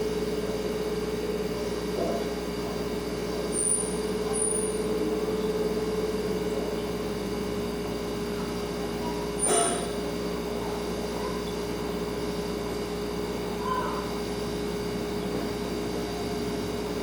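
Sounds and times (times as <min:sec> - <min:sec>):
refrigerator humming: 0:00.0 - 0:17.0
high squeaks: 0:09.4 - 0:10.0.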